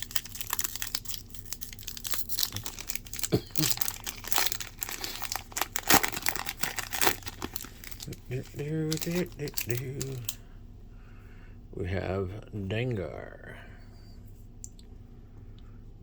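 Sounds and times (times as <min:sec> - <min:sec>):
plastic wrapper tearing and crinkling: 0:00.0 - 0:10.4.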